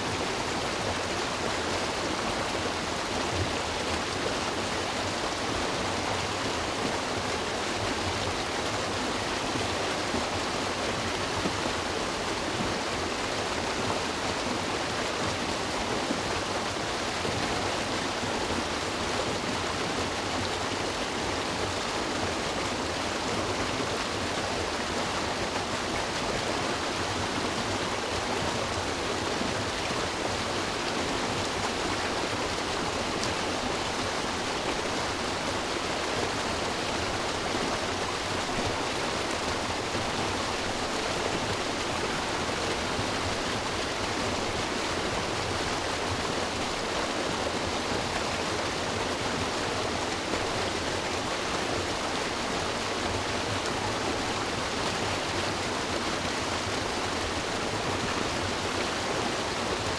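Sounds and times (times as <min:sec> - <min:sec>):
water rushing over rocks: 0:15.6 - 0:59.9.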